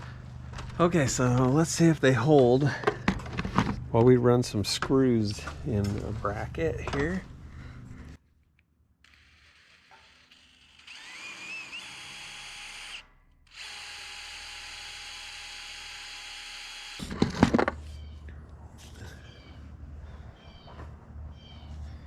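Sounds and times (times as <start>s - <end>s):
power drill whining: 9.0s - 17.7s.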